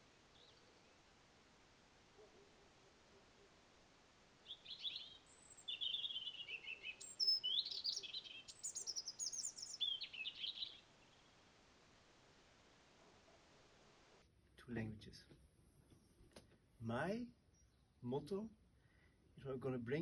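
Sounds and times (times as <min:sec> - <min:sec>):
songbird singing: 0:00.0 - 0:14.0, 0:17.3 - 0:18.3
faint steady hiss: 0:00.0 - 0:20.0.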